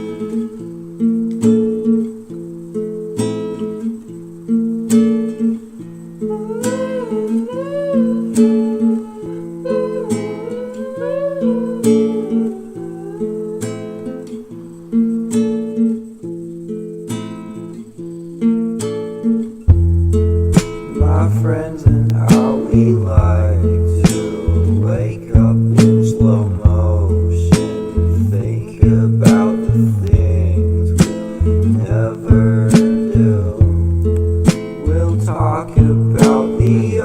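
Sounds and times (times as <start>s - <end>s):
acoustic guitar chords: 0.0s - 37.0s
wavering melody line: 6.2s - 14.4s.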